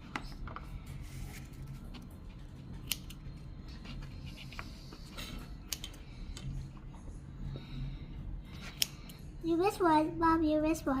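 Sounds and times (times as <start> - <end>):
low room hum: 0.0 - 11.0
scissors snipping: 2.8 - 3.2.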